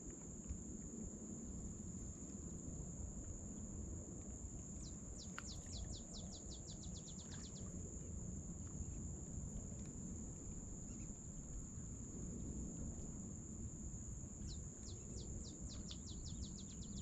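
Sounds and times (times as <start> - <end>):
wind and water rumble: 0.0 - 17.0
bird singing whistled notes: 4.8 - 7.6, 14.5 - 17.0.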